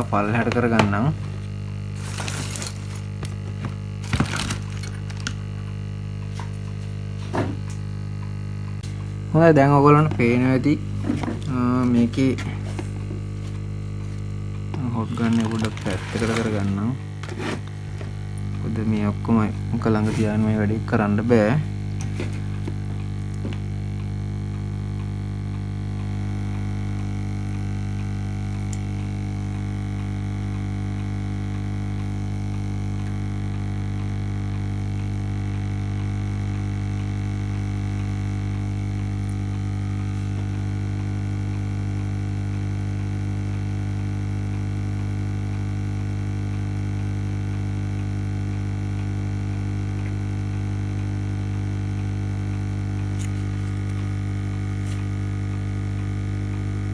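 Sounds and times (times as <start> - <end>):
hot air station humming: 0.0 - 23.9.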